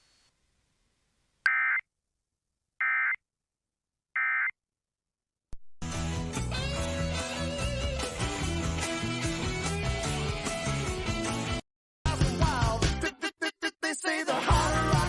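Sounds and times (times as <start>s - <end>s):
rock music with guitar: 5.8s - 13.0s.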